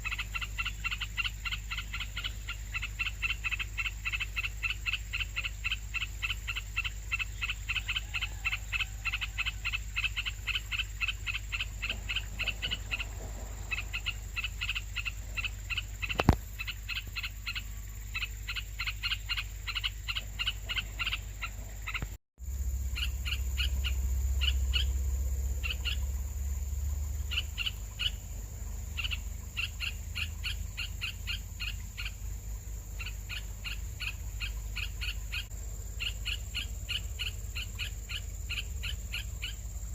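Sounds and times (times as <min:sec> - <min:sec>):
nestling birds chirping: 0:00.0 - 0:22.2, 0:22.9 - 0:39.9
sharp click: 0:16.1 - 0:16.5.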